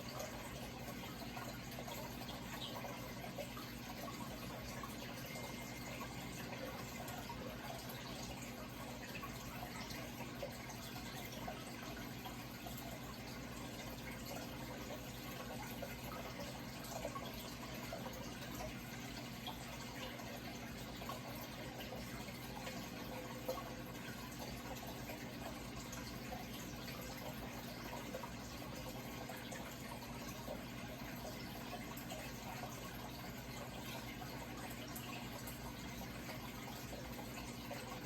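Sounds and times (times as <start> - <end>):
water drips: 0.0 - 38.0
water trickling and splashing: 0.0 - 38.0.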